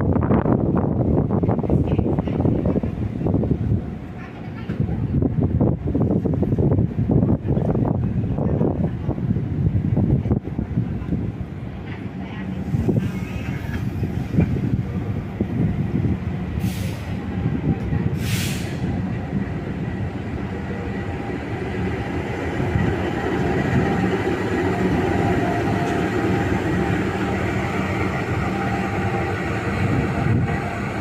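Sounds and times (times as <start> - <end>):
electric train rumbling: 0.0 - 31.0
air hisses: 18.2 - 19.0.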